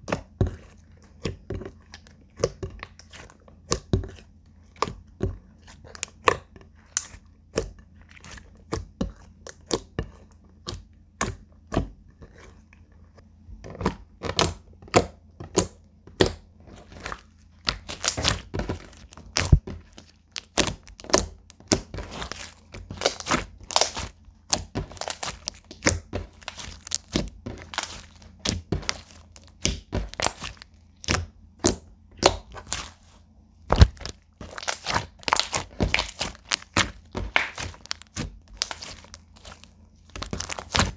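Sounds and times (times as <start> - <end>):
slime popping and clicking: 17.6 - 32.9, 33.7 - 40.9.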